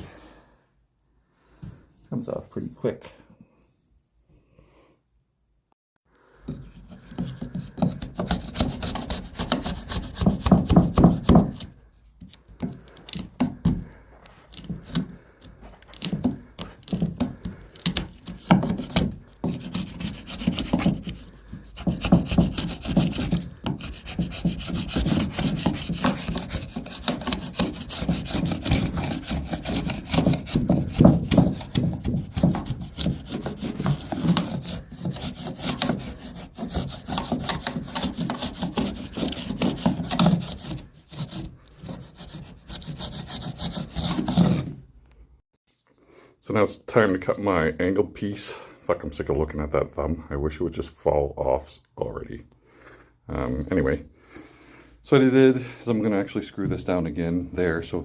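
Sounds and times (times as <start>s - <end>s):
tool rasping on wood: 6.5s - 11.8s, 12.5s - 44.8s.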